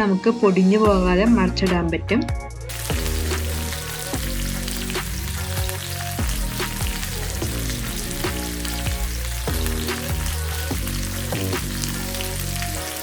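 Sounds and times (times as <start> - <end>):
background music: 0.0 - 13.0
fish sizzling in oil: 2.7 - 13.0.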